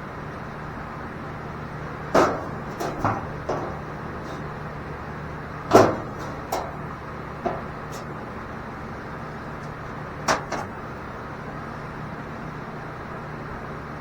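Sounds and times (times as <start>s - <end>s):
steady low hum: 0.0s - 14.0s
sharp knocks and clatters: 2.1s - 5.0s, 5.6s - 8.2s, 9.6s - 10.8s.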